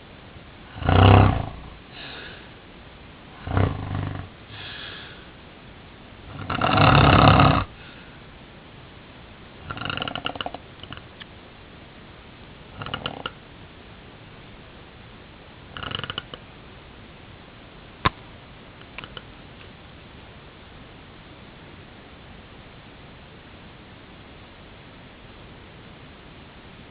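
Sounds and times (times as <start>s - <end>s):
man snoring: 0.7s - 2.3s, 3.4s - 5.0s, 6.3s - 7.8s, 9.6s - 10.6s, 12.8s - 13.3s, 15.8s - 16.4s.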